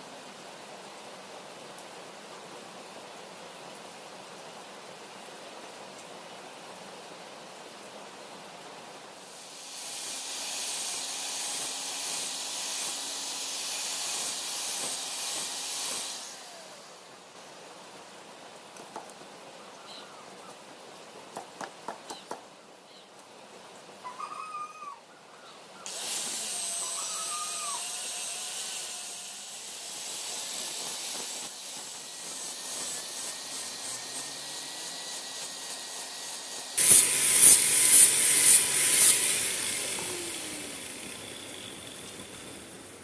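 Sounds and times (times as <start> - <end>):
electric power tool whining: 25.9 - 43.0.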